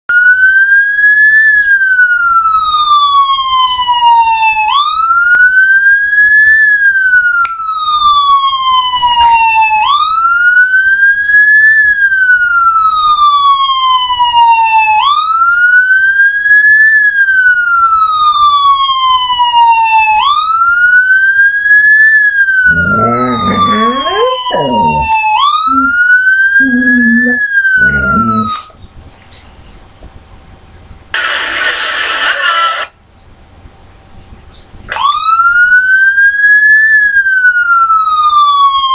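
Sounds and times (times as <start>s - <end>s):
wailing emergency siren: 0.1s - 28.8s, 34.9s - 38.9s
dog howling: 22.7s - 26.0s, 26.6s - 28.7s.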